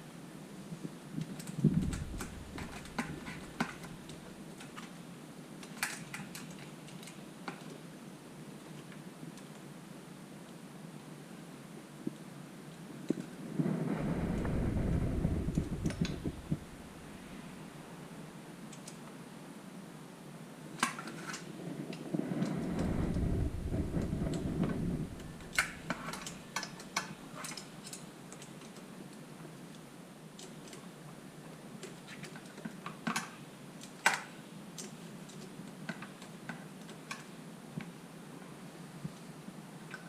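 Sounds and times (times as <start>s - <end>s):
low rumbling handling noise: 1.6s - 4.2s, 13.5s - 17.8s, 22.4s - 26.5s.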